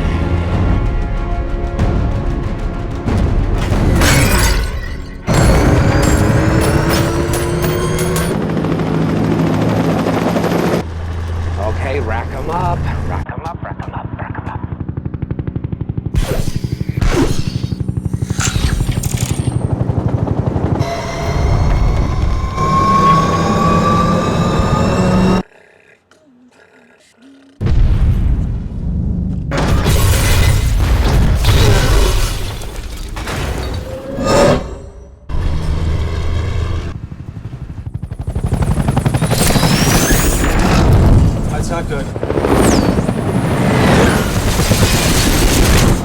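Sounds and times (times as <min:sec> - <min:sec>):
pulsing vehicle drone: 0:00.0 - 0:25.5, 0:34.1 - 0:46.0
film score: 0:00.0 - 0:46.0
heavy truck rumble: 0:19.9 - 0:25.5
high whine: 0:20.8 - 0:25.4.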